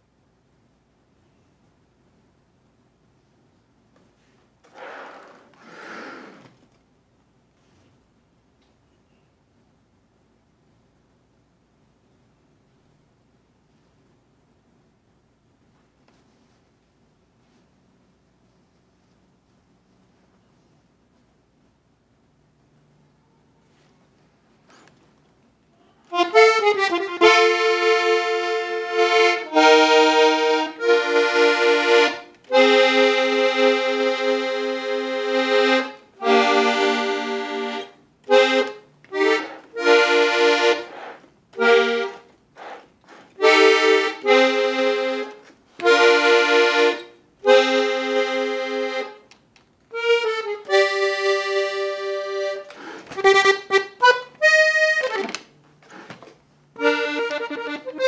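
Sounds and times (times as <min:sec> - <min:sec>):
button accordion playing: 0:26.1 - 0:49.2, 0:49.9 - 0:55.5, 0:56.7 - 0:58.0.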